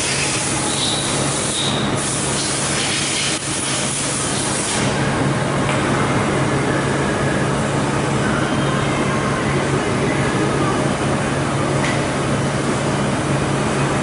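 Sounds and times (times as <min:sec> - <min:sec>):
machine hiss: 0:00.0 - 0:05.0
machine low hum: 0:00.0 - 0:14.0.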